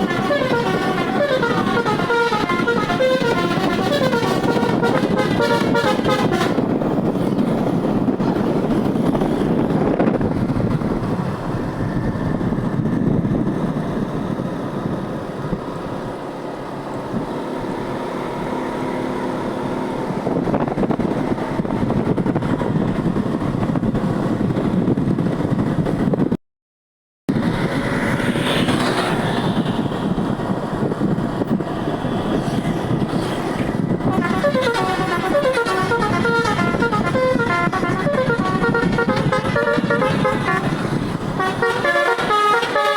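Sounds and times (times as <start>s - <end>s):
musical air horn melody: 0.0s - 6.8s, 34.0s - 42.9s
vehicle engine and road noise: 0.0s - 26.4s, 27.3s - 42.9s.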